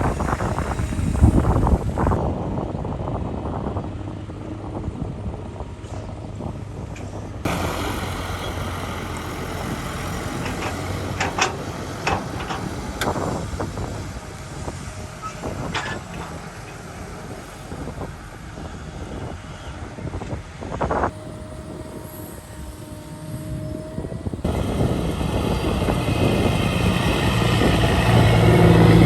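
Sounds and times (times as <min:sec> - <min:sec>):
diesel engine of heavy machinery: 0:00.0 - 0:29.0
metal and rock clanking: 0:10.4 - 0:13.9, 0:15.2 - 0:17.0.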